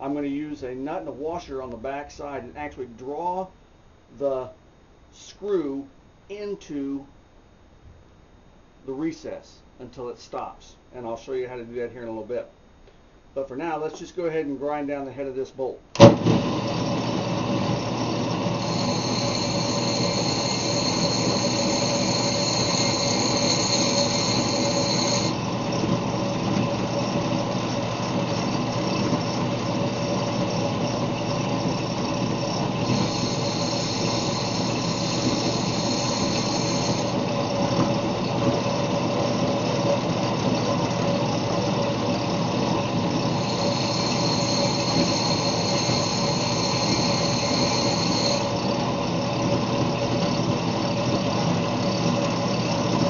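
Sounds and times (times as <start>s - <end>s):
disc sander running: 16.0s - 53.0s.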